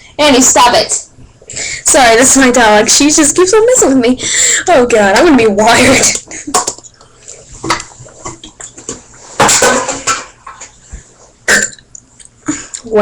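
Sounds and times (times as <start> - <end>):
woman burping: 11.5 - 11.9.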